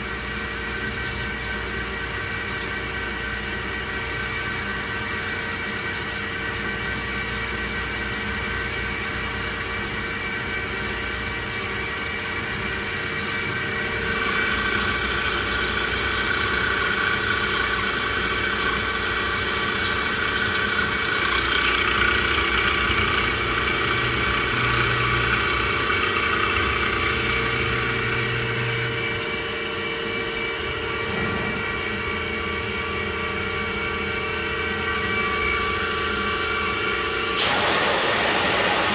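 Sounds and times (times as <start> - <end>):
hissing coolant and cutting: 12.8 - 28.6, 37.0 - 38.9.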